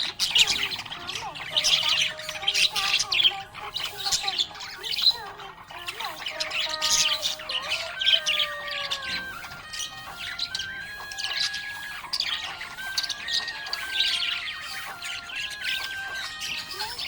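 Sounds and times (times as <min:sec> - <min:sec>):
budgerigars chirping and warbling: 0:00.0 - 0:17.0.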